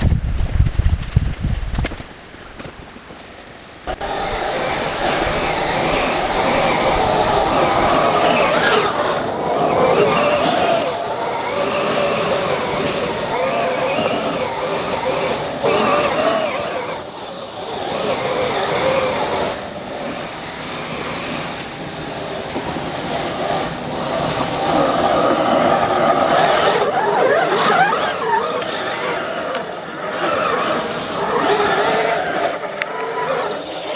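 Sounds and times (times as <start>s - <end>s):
tyres scrabbling on dirt: 0.0s - 19.8s
rc car motor whining: 3.9s - 33.9s.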